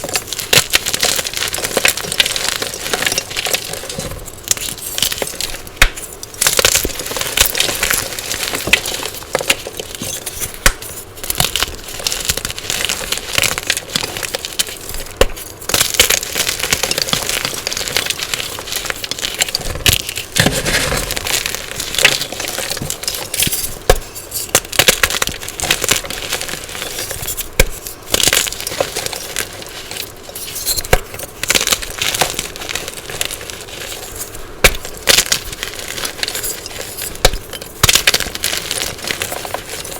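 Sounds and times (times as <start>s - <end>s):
chalk crunching: 0.0s - 39.9s.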